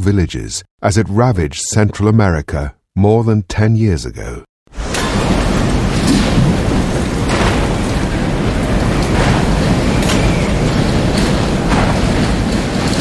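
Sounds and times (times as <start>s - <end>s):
sharp crashing hits: 4.7s - 13.0s
continuous rumbling roar: 4.8s - 13.0s.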